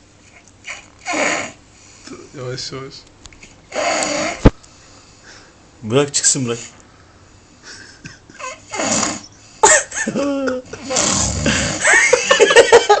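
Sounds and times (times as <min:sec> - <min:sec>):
person snoring loudly: 0:00.7 - 0:01.6, 0:03.7 - 0:04.5, 0:08.4 - 0:09.3, 0:10.6 - 0:12.1.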